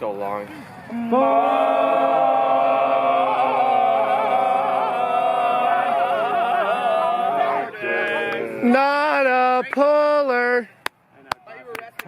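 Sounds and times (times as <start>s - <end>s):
group of voices singing a chord: 0.9s - 8.8s.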